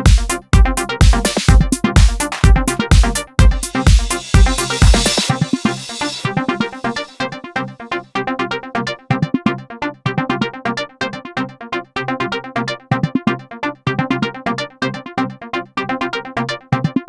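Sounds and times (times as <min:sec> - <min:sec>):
electronic synthesizer music: 0:00.0 - 0:08.9.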